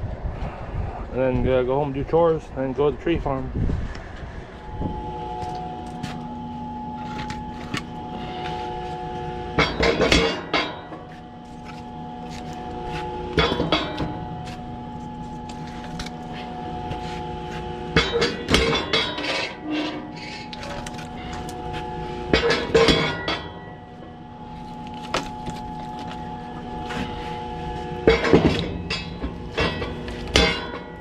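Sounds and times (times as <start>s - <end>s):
fuel pump humming: 4.4s - 31.0s
metal clinking and clanking: 9.6s - 14.2s, 18.0s - 21.7s, 22.3s - 23.8s, 28.0s - 31.0s.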